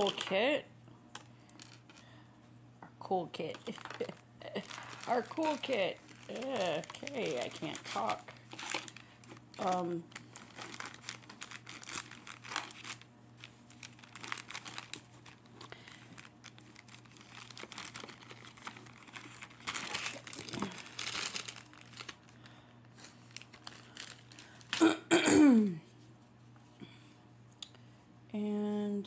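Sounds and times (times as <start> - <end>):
plastic packaging crinkling: 0.0 - 0.6, 1.2 - 2.1, 3.3 - 24.8
person coughing: 24.7 - 25.9.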